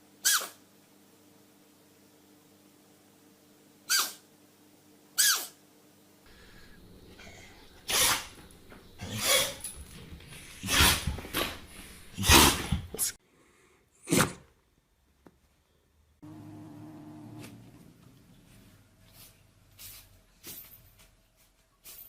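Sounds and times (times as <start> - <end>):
pets sneezing: 7.1 - 13.2.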